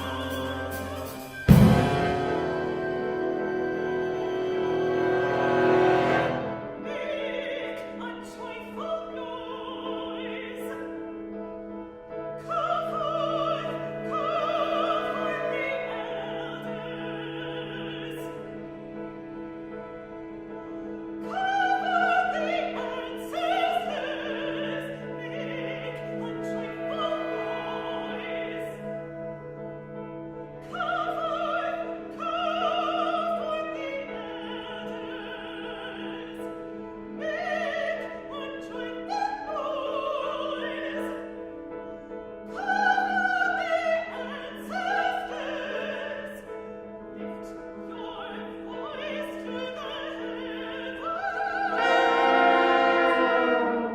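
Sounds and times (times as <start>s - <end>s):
chamber ensemble chords: 0.0s - 7.4s, 51.5s - 53.9s
woman singing operatically: 6.2s - 11.1s, 12.4s - 18.6s, 21.2s - 29.1s, 30.6s - 41.4s, 42.5s - 53.9s.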